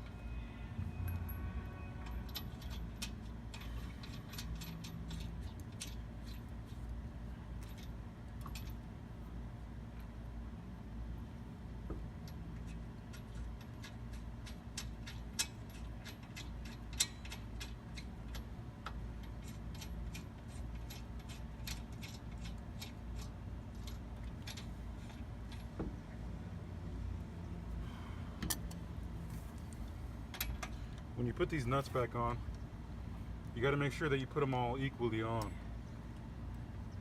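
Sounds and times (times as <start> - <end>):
light metallic clicks and clinks: 2.0 - 6.4.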